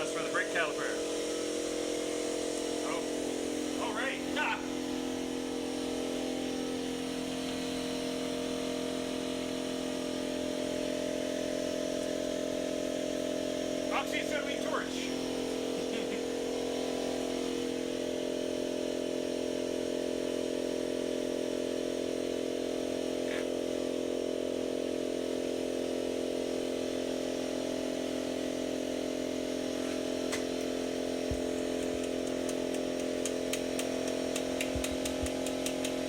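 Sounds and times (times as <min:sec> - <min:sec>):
gas torch humming: 0:00.0 - 0:36.0
sharp metallic clicks: 0:31.4 - 0:36.0.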